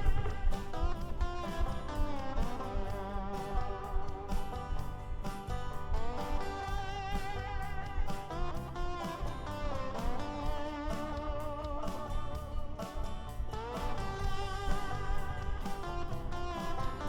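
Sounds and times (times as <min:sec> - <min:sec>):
electric guitar with bent notes: 0:00.0 - 0:17.0.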